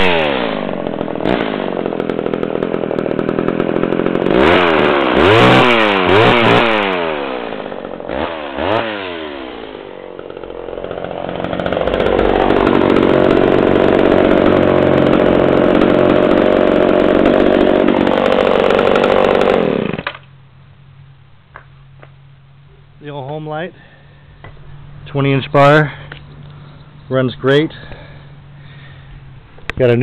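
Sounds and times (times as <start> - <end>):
chainsaw revving: 0.0 - 20.2.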